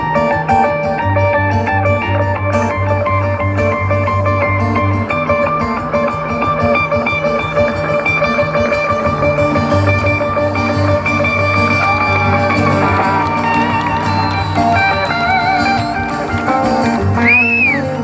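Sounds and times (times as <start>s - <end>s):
guitar: 0.0s - 18.0s
live band playing instrumental: 0.0s - 18.0s.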